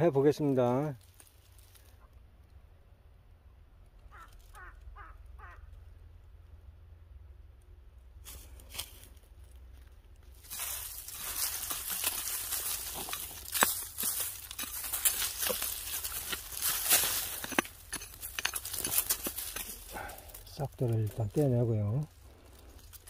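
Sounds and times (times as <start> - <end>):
crackling of dry leaves and soil: 0.0 - 23.0
crow cawing: 4.1 - 5.8.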